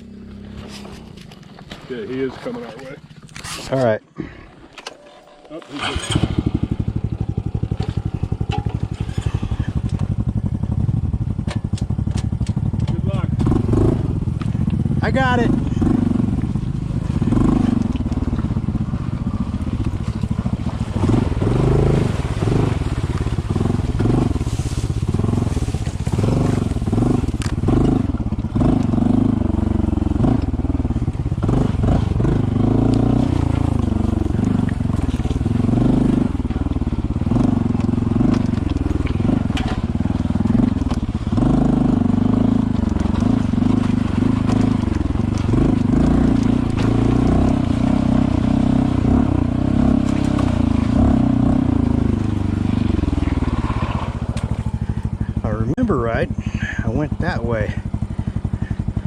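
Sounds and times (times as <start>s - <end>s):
motorcycle engine running: 0.0s - 59.0s
bike knocking over rough ground: 7.5s - 10.4s, 37.5s - 41.6s.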